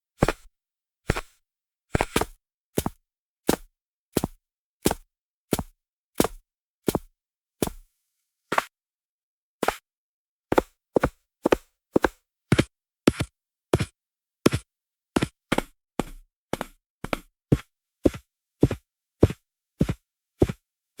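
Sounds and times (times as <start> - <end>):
footsteps heel and toe knocks: 2.0 - 5.0, 5.6 - 7.8, 10.5 - 20.6.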